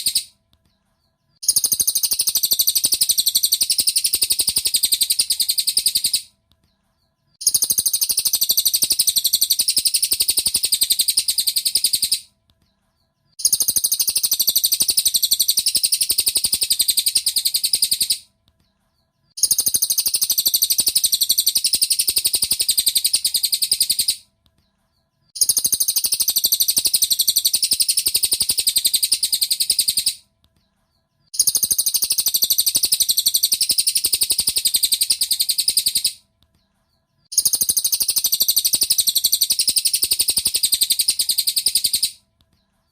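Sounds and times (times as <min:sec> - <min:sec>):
bird twittering chirps: 0:00.0 - 0:06.3, 0:07.0 - 0:12.3, 0:13.0 - 0:18.3, 0:19.0 - 0:24.3, 0:24.9 - 0:30.2, 0:30.9 - 0:36.2, 0:36.9 - 0:42.2.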